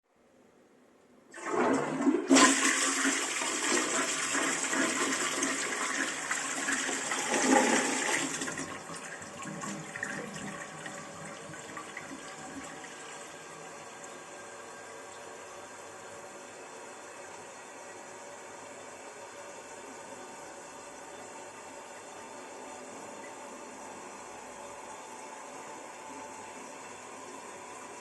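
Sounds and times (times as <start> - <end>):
toilet flushing: 1.3 - 15.1.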